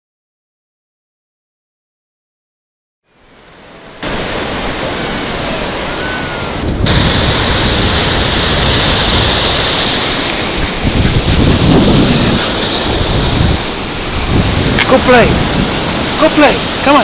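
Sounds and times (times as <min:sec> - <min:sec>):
ocean surf washing onto beach: 0:03.1 - 0:17.0
wind on microphone: 0:04.0 - 0:17.0.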